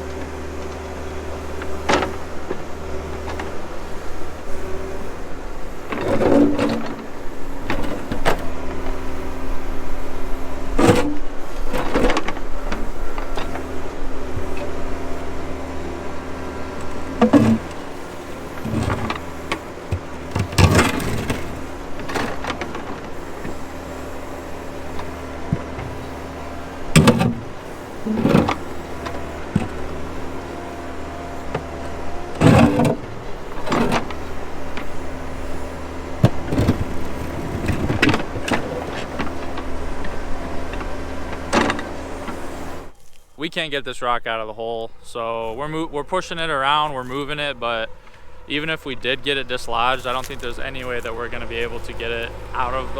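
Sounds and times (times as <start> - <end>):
backhoe engine running: 0.0 - 52.9
bucket knocking and scraping rock: 5.9 - 8.9, 16.8 - 24.0, 27.0 - 30.5, 31.5 - 35.6, 36.2 - 42.4.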